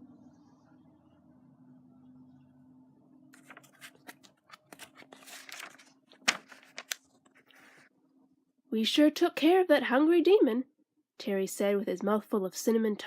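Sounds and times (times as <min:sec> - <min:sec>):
faint low hum: 0:00.0 - 0:10.7
paper crinkling and rustling: 0:03.4 - 0:07.9.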